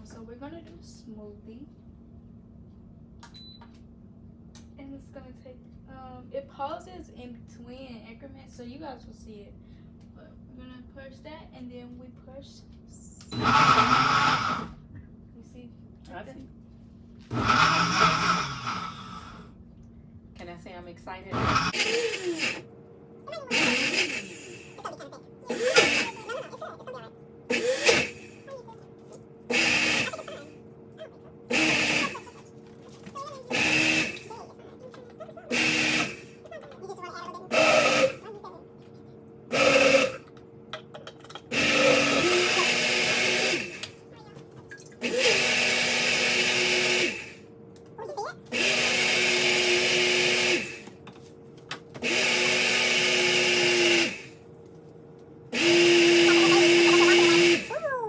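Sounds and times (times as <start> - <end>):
blender motor bursts: 13.4 - 14.8, 17.3 - 19.5, 21.3 - 22.7, 23.5 - 24.8, 25.5 - 26.5, 27.5 - 28.5, 29.5 - 30.6, 31.5 - 32.5, 33.4 - 34.5, 35.5 - 36.4, 37.5 - 38.2, 39.5 - 40.3, 41.5 - 44.0, 45.0 - 47.5, 48.5 - 51.0, 52.0 - 54.4, 55.5 - 57.8.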